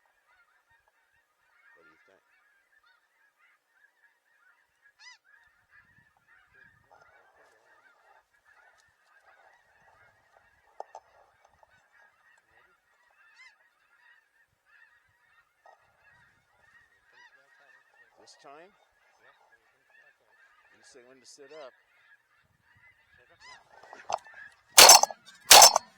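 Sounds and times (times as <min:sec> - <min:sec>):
sharp click: 0:24.8 - 0:25.8.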